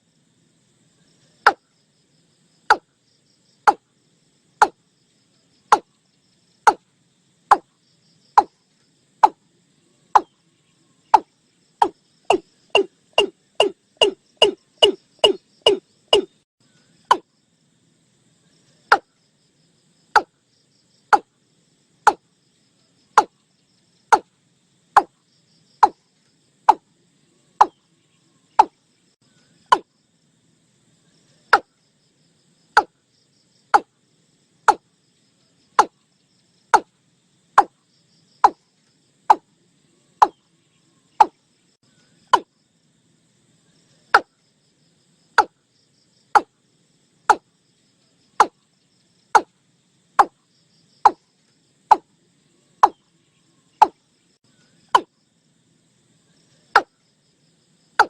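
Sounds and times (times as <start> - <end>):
bird calling sharp notes: 12.3 - 16.4.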